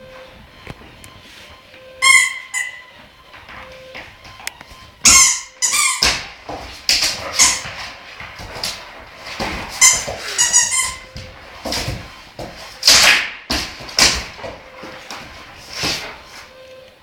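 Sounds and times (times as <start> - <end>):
short high-pitched squeaks: 2.0 - 3.0, 4.4 - 6.2, 9.8 - 11.2.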